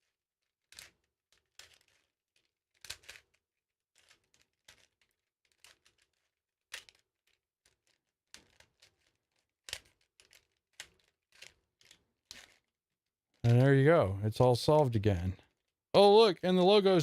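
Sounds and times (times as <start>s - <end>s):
puzzle cube layers clacking: 0.6s - 12.7s, 13.3s - 13.9s.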